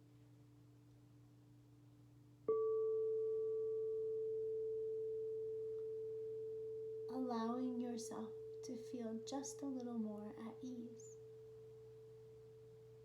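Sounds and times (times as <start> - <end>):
meditation bowl ringing: 2.5 - 9.3, 10.5 - 13.0.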